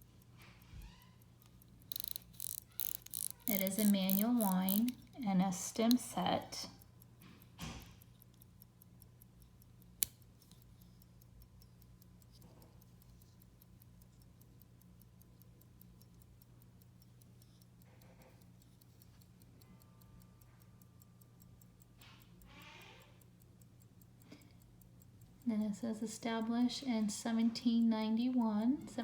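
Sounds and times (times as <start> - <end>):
pocket watch ticking: 0.0 - 29.0
sharp click: 1.5 - 5.0.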